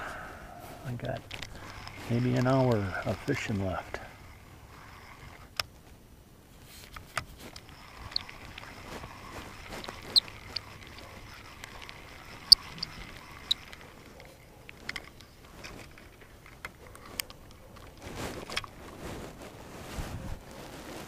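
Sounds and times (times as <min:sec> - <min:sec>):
short squeaks: 0:06.9 - 0:18.8.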